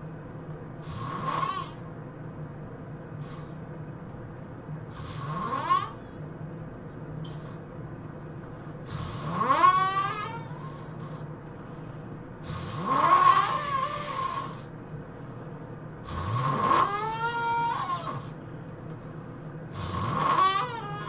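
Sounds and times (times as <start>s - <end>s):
person snoring loudly: 0.8s - 1.8s, 4.9s - 6.0s, 8.9s - 11.2s, 12.4s - 14.7s, 16.0s - 18.4s, 19.7s - 21.0s.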